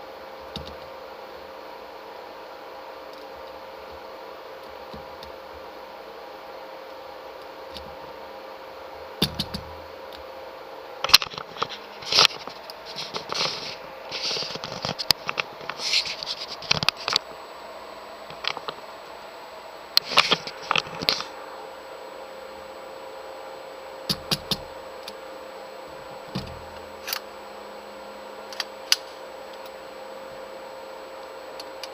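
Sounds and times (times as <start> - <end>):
faint steady hum: 0.0 - 31.9
handling clicks and scrapes: 11.0 - 17.3, 20.0 - 21.3.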